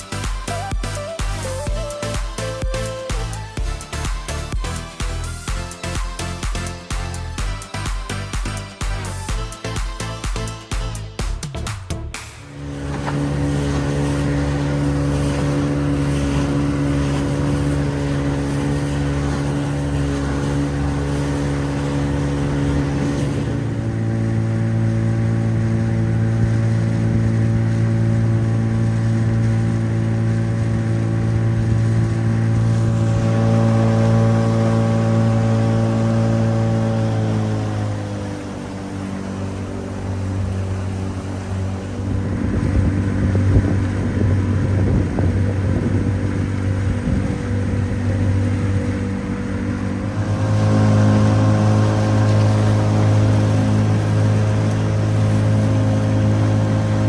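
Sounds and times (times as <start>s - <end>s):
outboard motor droning: 0.0s - 11.5s, 12.3s - 57.0s
water slapping against hulls: 0.0s - 57.0s
wind buffeting: 39.6s - 57.0s.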